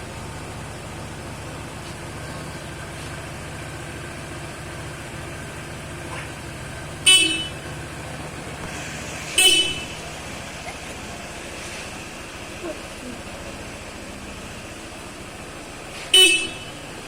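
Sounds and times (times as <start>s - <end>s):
vehicle engine idling: 0.0s - 17.0s
vehicle horn toot: 7.0s - 7.8s, 9.2s - 10.2s, 16.0s - 17.0s.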